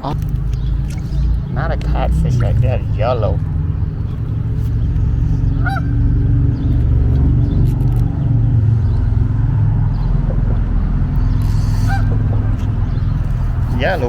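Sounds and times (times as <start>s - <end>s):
road traffic rumble: 0.0s - 14.0s
goose honking: 4.2s - 6.5s, 10.4s - 14.0s.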